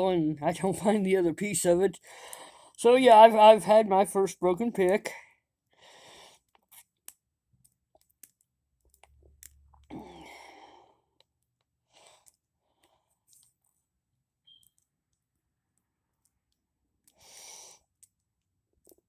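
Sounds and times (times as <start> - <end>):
person breathing out: 9.9 - 11.0.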